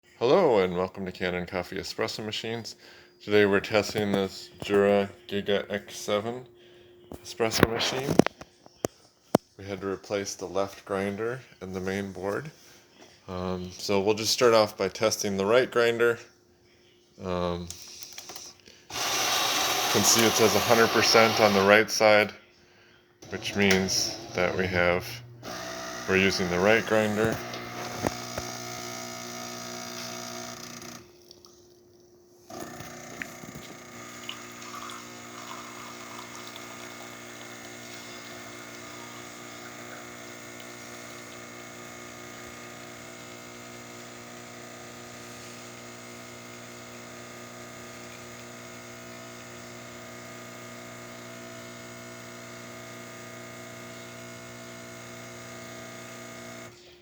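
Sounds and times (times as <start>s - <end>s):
water pump humming: 18.9s - 21.8s, 23.2s - 31.5s, 32.5s - 56.7s
espresso machine running: 18.9s - 22.2s, 23.2s - 31.0s, 32.5s - 56.8s.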